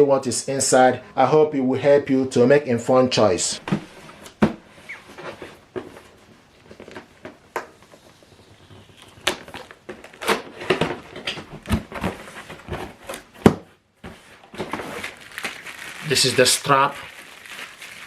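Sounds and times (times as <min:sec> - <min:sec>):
packaging rustling: 0:03.7 - 0:13.4, 0:14.2 - 0:18.0.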